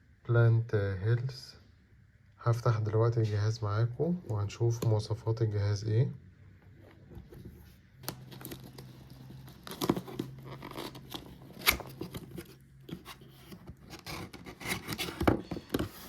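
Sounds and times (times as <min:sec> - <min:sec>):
packaging tearing and crinkling: 0:08.0 - 0:15.3.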